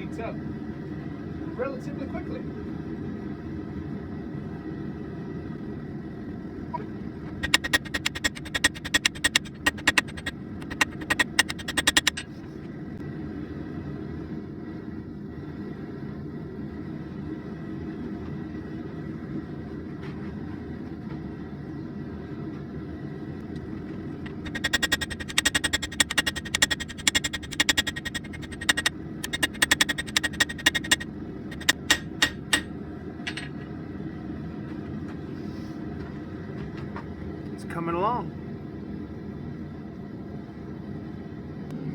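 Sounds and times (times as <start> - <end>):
steady low rumble: 5.2 - 14.8
hammer striking steel on anvil: 31.6 - 32.7.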